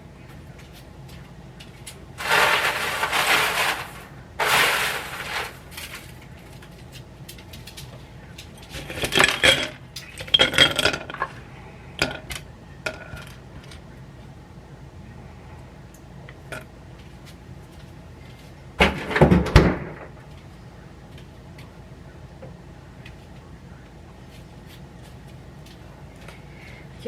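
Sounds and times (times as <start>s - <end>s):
dishes and utensils clattering: 8.7s - 11.4s.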